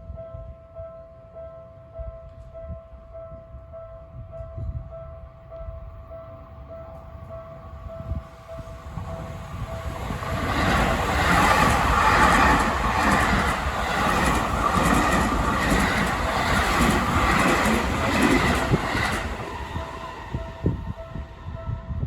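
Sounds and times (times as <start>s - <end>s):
electric train passing: 6.3s - 22.0s
wheels clacking over rail joints: 9.9s - 20.3s.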